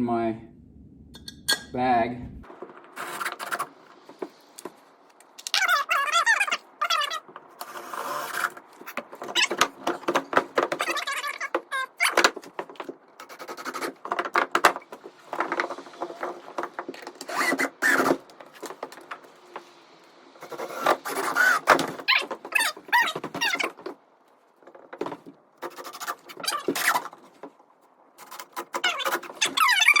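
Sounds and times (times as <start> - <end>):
knocking and scraping on wood: 2.5 - 4.8, 5.4 - 19.8, 20.4 - 30.0
short squeaks: 5.4 - 14.1, 17.0 - 18.7, 20.4 - 23.9, 25.6 - 27.4, 28.2 - 30.0.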